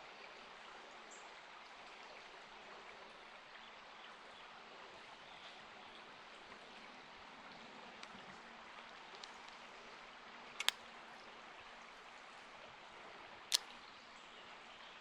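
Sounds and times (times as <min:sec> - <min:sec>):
sharp clicks: 0:10.6 - 0:10.8, 0:13.5 - 0:13.8.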